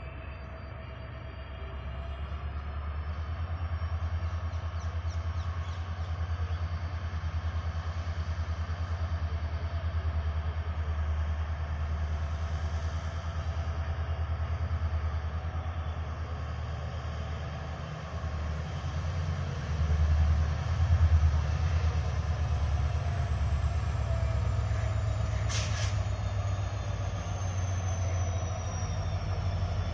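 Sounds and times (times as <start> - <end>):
diesel locomotive engine rumble: 0.0 - 29.9.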